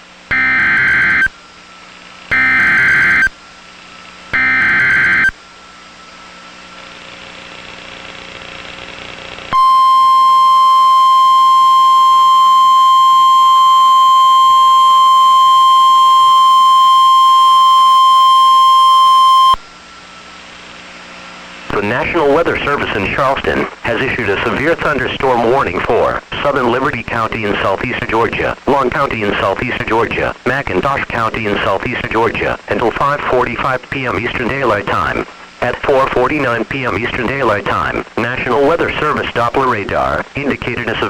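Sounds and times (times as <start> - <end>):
steady loud warning alarm tone: 0.3 - 1.4, 2.3 - 3.3, 4.4 - 5.3, 9.5 - 19.6.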